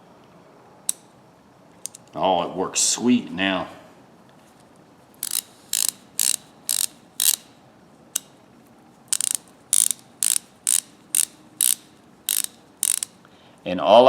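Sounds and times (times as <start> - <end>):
ratchet clicking: 5.2 - 7.6, 8.2 - 8.4, 9.1 - 13.2.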